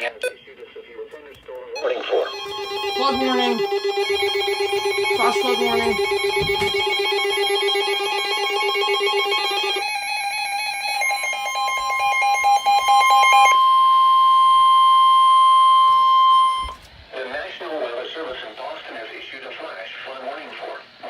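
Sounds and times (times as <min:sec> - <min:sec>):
pulsing warbling alarm: 0:01.8 - 0:16.8
steady single-pitch alarm tone: 0:01.8 - 0:16.9.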